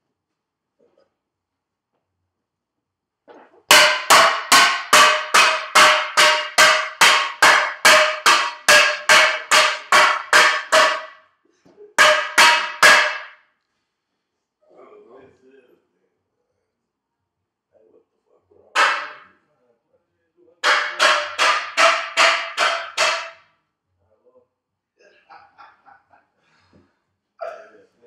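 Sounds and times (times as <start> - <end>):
loud banging on ringing metal: 3.7 - 11.2, 12.0 - 13.4, 18.8 - 19.3, 20.6 - 23.5.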